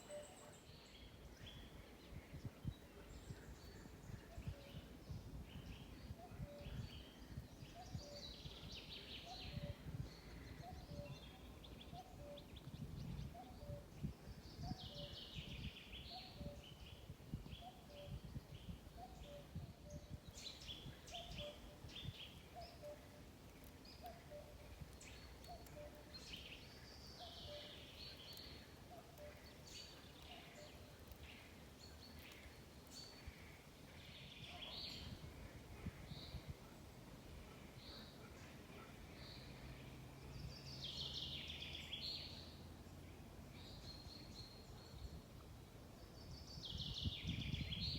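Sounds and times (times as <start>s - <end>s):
birds chirping and singing: 0.0s - 36.6s
wind rumble on microphone: 0.9s - 23.1s, 33.1s - 37.5s, 44.0s - 47.9s.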